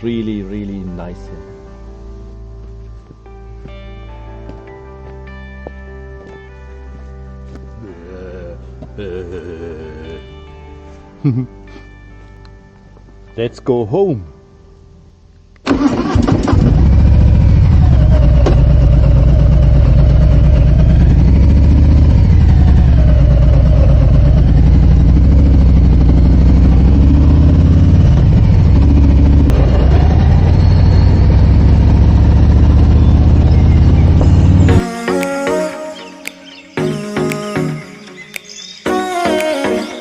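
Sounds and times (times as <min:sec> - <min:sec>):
motorcycle engine revving: 0:15.7 - 0:34.8.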